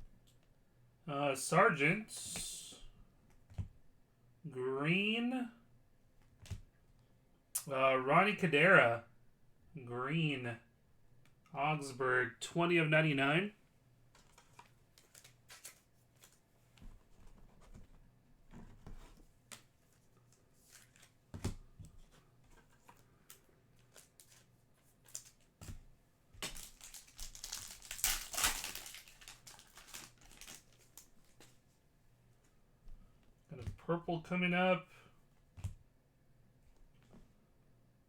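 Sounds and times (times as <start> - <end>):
cards clicking and rustling: 14.2 - 16.4, 18.8 - 25.8, 26.4 - 31.6
foil wrapper crinkling and tearing: 26.4 - 31.4.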